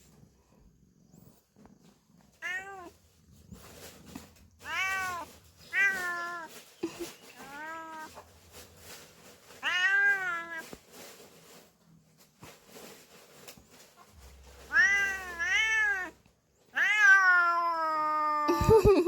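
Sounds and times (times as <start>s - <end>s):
cat meowing: 2.4s - 3.0s, 4.6s - 6.6s, 7.3s - 8.3s, 9.6s - 10.7s, 14.5s - 18.5s.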